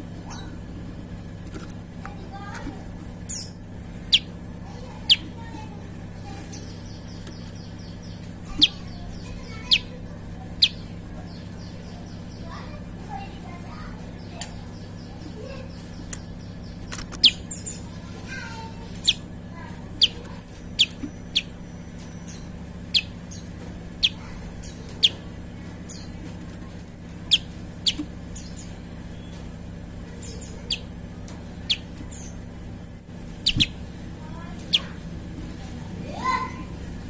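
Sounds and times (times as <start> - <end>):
steady low hum: 0.0 - 37.0
faint high bird calls: 3.2 - 26.3, 27.2 - 32.6, 33.4 - 35.0
bird sharp short chirps: 33.4 - 33.8.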